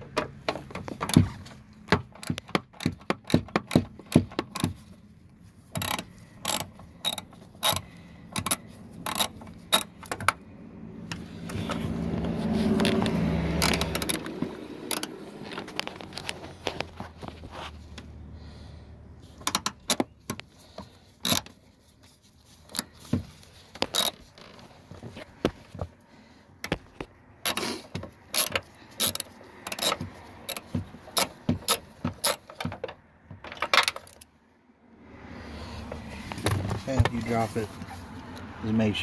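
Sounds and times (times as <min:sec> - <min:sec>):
ratchet clicking: 0:00.8 - 0:04.8, 0:05.7 - 0:10.4, 0:12.8 - 0:15.2, 0:19.4 - 0:21.6, 0:27.4 - 0:32.8.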